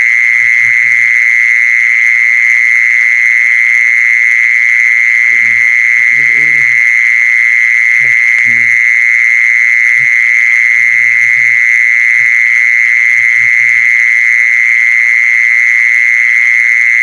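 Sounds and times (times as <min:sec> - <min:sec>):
animal high-pitched trill: 0:05.2 - 0:08.8
faint low croaks: 0:05.2 - 0:08.9.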